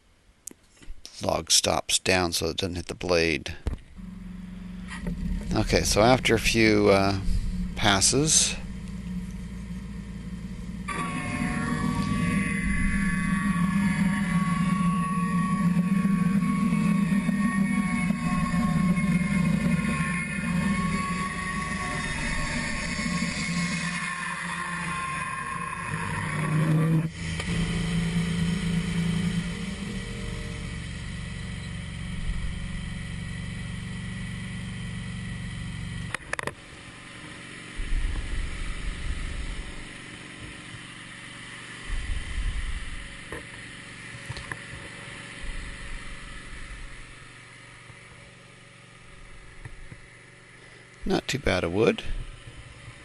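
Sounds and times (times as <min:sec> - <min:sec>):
low rumbles: 0:03.6 - 0:36.3, 0:37.8 - 0:41.0, 0:41.8 - 0:44.8, 0:45.4 - 0:47.9
band sawmill cutting log: 0:04.0 - 0:53.0.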